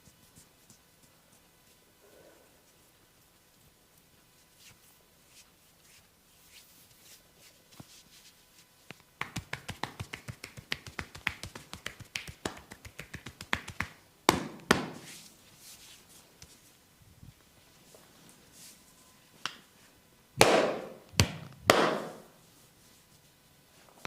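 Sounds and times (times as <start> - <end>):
hands tapping on a head: 8.9 - 15.0, 20.4 - 22.2.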